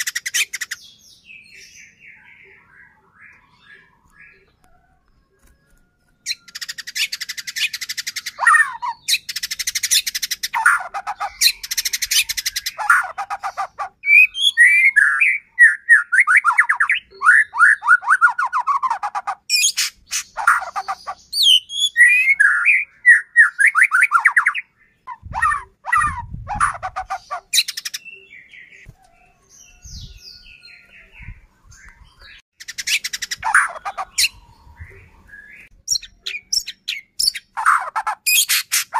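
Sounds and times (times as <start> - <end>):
bird whistled phrases: 6.3 - 28.8.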